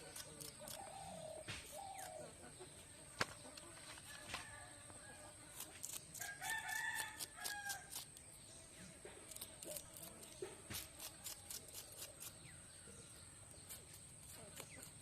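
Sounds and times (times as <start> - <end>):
rooster crowing: 6.2 - 7.9.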